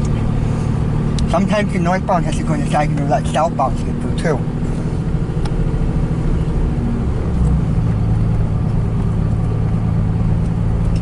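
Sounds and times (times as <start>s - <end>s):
car engine and road noise: 0.0s - 11.0s.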